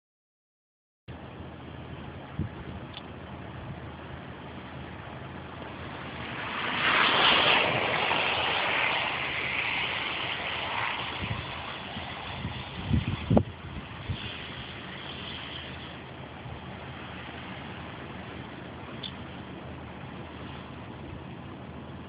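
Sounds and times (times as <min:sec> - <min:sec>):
tyres hissing through wet slush: 0:04.2 - 0:13.2, 0:13.8 - 0:21.5.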